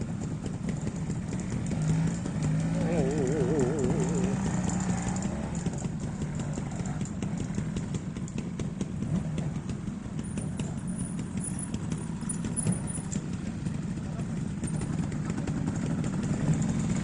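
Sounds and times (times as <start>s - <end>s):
motorcycle engine at low revs: 0.0s - 17.0s
sharp ticks: 0.7s - 8.9s.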